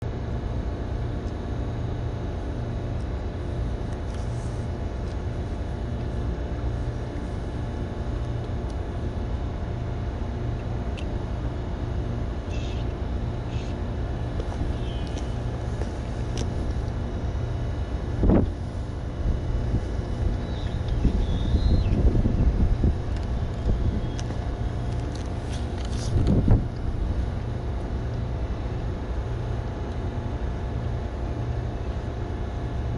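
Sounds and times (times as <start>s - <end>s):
low machine rumble: 0.0s - 32.9s.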